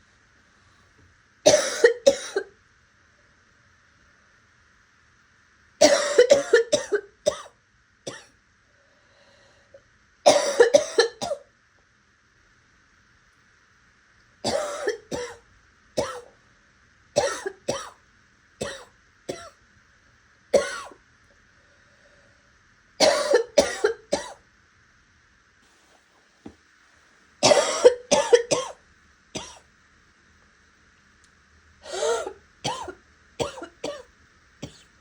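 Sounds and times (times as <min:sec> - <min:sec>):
person coughing: 0:01.5 - 0:02.5, 0:05.8 - 0:07.5, 0:10.3 - 0:11.4, 0:14.5 - 0:15.4, 0:17.2 - 0:18.0, 0:20.6 - 0:21.0, 0:23.0 - 0:24.4, 0:27.4 - 0:28.8, 0:29.4 - 0:29.6, 0:31.9 - 0:34.9.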